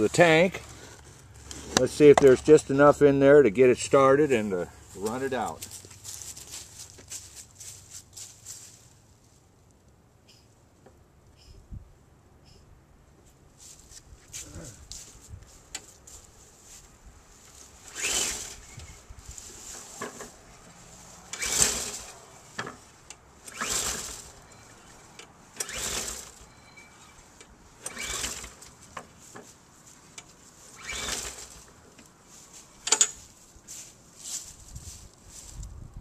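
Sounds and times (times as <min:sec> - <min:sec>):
recoil starter cord pulls: 0:17.8 - 0:19.0, 0:21.3 - 0:29.5, 0:30.2 - 0:32.1, 0:32.8 - 0:33.2.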